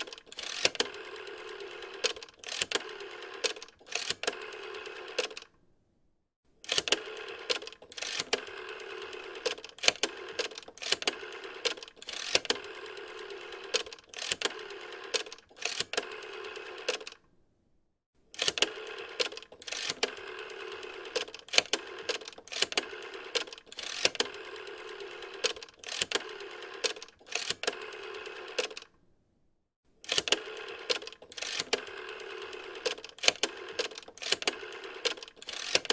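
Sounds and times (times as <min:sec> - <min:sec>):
rotary dial whirring with clicks: 0:00.0 - 0:05.5, 0:06.6 - 0:17.2, 0:18.4 - 0:28.9, 0:30.0 - 0:35.9.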